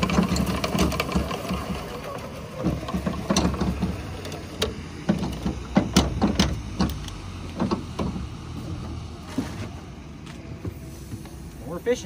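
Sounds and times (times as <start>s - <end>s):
fishing gear clicking and knocking: 0.0s - 1.9s
boat motor humming: 0.0s - 9.2s.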